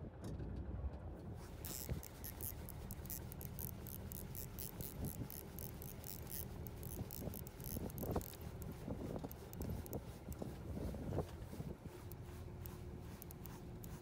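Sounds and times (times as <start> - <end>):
steady low rumble: 1.2 - 14.0
fishing reel clicking: 1.5 - 10.5, 12.1 - 14.0.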